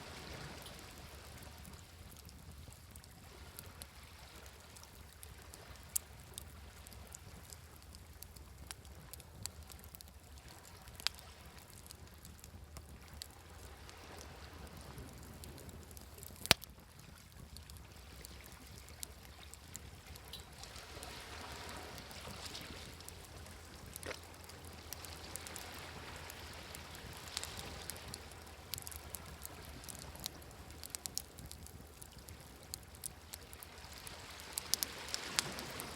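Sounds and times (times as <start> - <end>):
wood fire crackling and popping: 0.2 - 35.9
waves washing ashore: 20.6 - 23.3, 33.7 - 35.9.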